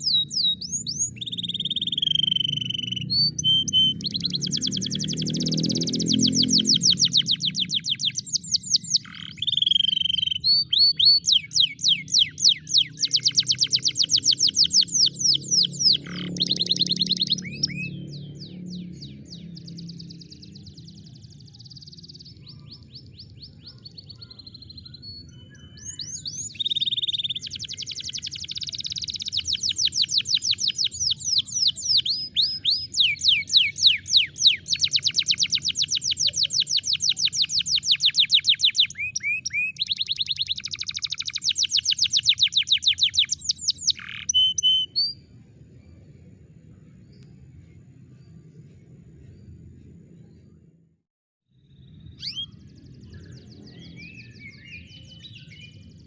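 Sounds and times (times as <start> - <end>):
canary singing trills: 0.0 - 45.2, 51.7 - 56.0
soft low background noise: 19.3 - 50.9.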